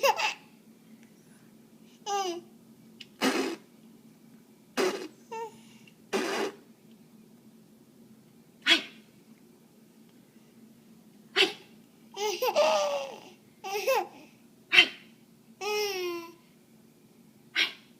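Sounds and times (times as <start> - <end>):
baby giggling and squealing: 0.0 - 0.5, 12.2 - 15.0.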